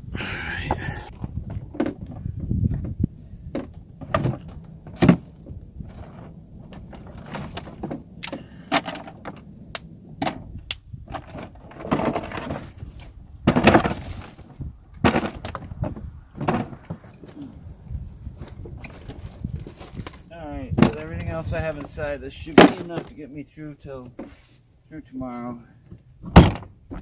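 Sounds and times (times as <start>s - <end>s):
wood fuel bricks knocking together: 0.6s - 17.6s, 18.4s - 23.2s.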